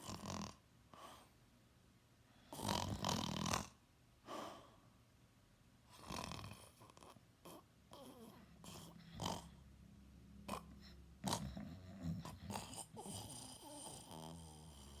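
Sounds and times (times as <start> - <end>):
person snoring: 2.5 - 3.8, 6.0 - 9.6, 10.5 - 15.0.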